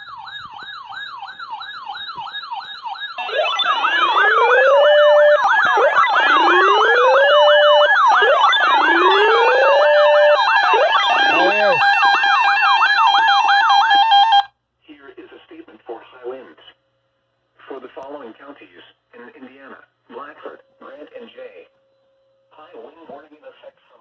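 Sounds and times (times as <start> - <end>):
siren wail: 0.0 - 14.5
siren yelp: 0.0 - 14.5.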